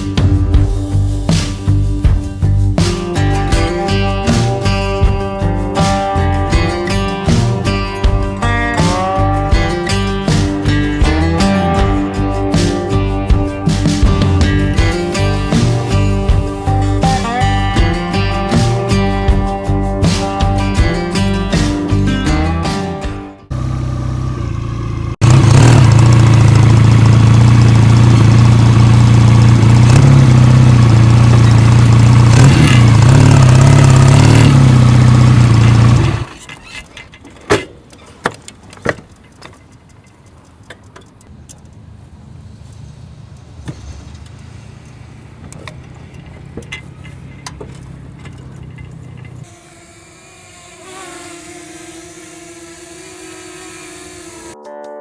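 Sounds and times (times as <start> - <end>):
vehicle engine revving: 10.2 - 19.0, 23.4 - 36.4, 42.5 - 54.6.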